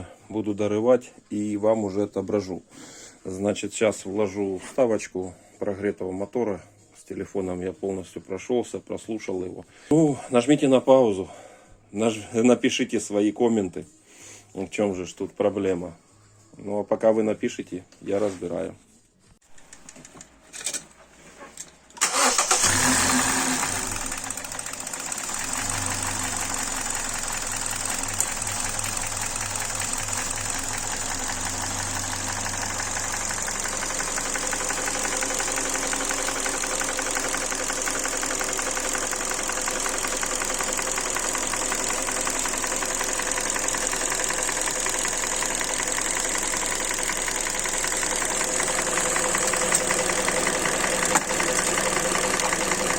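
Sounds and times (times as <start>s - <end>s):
car engine starting and idling: 21.9s - 52.9s.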